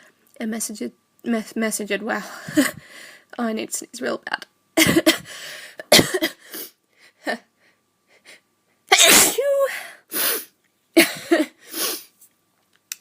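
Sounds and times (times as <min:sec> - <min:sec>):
woman sneezing: 0:08.9 - 0:12.1.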